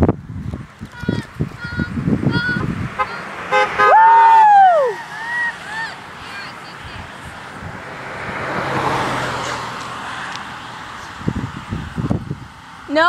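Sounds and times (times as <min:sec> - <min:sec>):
car driving past: 0:02.8 - 0:12.9.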